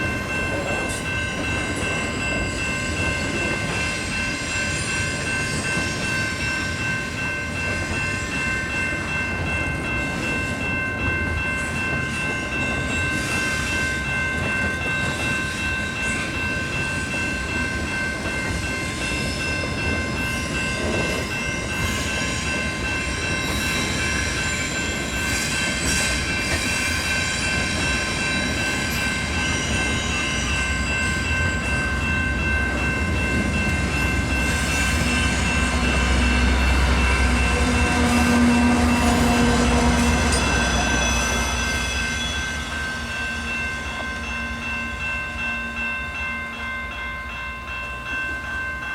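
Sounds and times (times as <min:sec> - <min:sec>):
freight train rumbling: 0:00.0 - 0:48.9.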